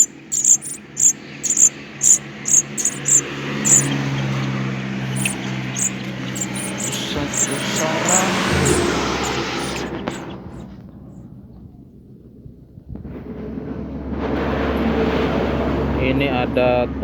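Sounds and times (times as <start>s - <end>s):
small animal chirping: 0.0s - 10.6s
low engine hum: 0.0s - 10.8s.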